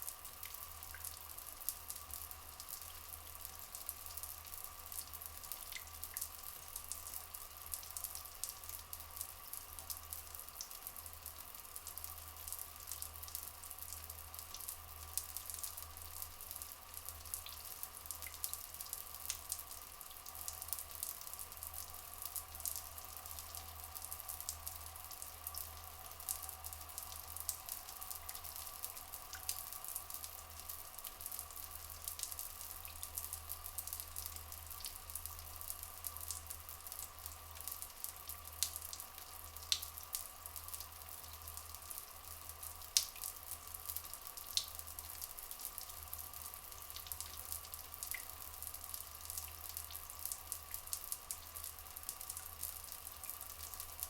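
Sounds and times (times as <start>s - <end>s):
water dripping and trickling: 0.0s - 54.0s.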